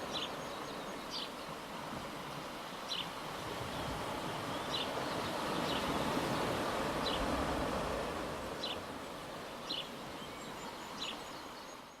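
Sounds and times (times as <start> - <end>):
waves washing on shore: 0.0 - 11.9.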